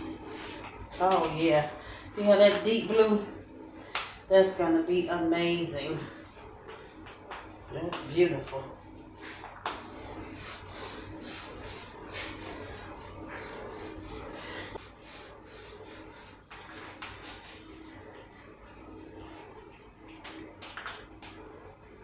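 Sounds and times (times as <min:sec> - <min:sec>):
paint roller rolling on wood: 0:00.0 - 0:03.2, 0:05.3 - 0:21.1.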